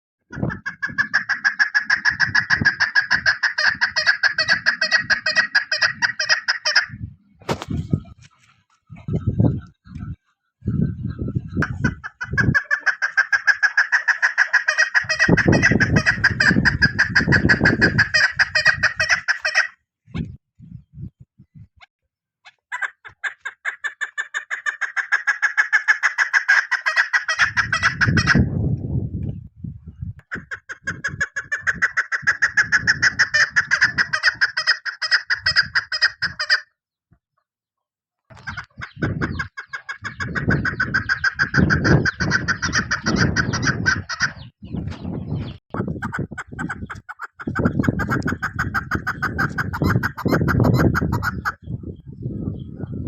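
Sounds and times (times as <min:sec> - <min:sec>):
partridge calling rapid notes: 0:00.3 - 0:07.0, 0:08.9 - 0:19.8, 0:22.7 - 0:28.5, 0:30.3 - 0:36.6, 0:38.3 - 0:51.9.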